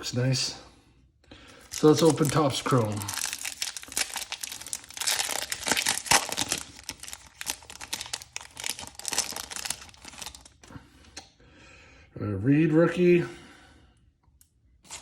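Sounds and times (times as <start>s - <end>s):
foil wrapper tearing and crinkling: 1.6s - 10.6s.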